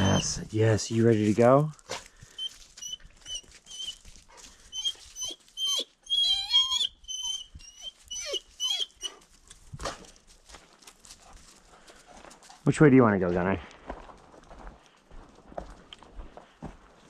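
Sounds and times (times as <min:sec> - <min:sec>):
dog whining: 0:02.4 - 0:04.0, 0:04.7 - 0:09.2.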